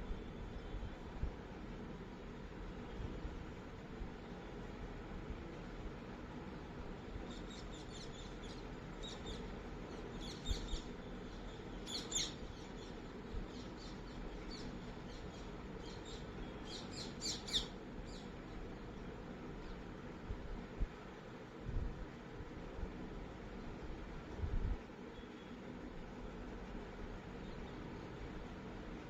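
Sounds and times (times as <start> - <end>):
steady room hiss: 0.0 - 29.0
small birds chirping: 7.1 - 19.9.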